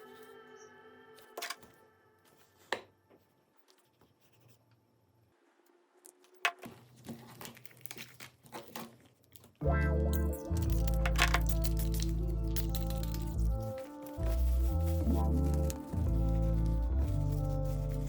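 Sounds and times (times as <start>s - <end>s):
held music chord: 9.6s - 18.0s.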